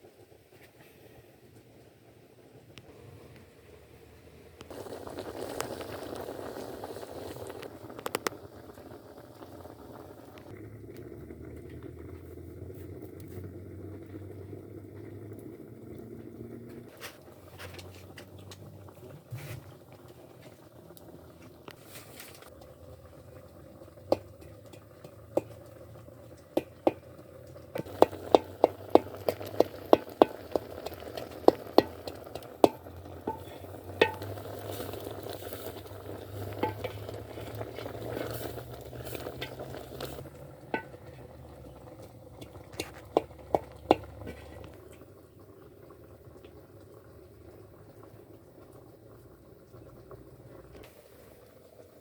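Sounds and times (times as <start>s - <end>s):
soft sizzling hiss: 0.0s - 14.2s, 14.9s - 52.0s
utensil stirring food in pot: 21.7s - 45.0s
utensil knocking against pot: 24.1s - 25.6s, 27.8s - 34.4s, 36.5s - 37.2s, 40.7s - 41.1s, 42.4s - 44.6s.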